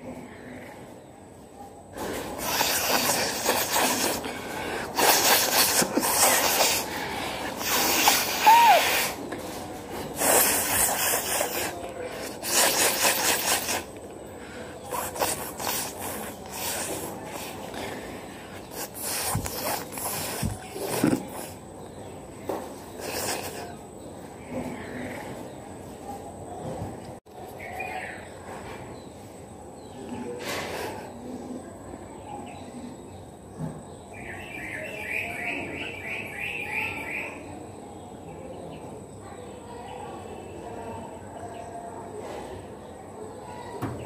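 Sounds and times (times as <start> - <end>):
woman blowing her nose: 2.3 - 9.2, 10.2 - 14.0, 14.9 - 17.7, 18.6 - 21.6, 23.0 - 23.7.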